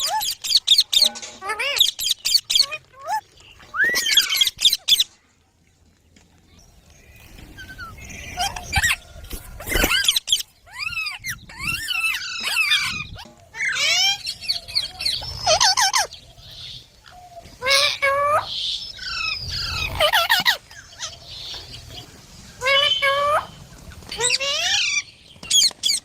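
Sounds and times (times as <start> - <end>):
baby parrot chirping: 0.0 - 5.1, 9.6 - 16.1.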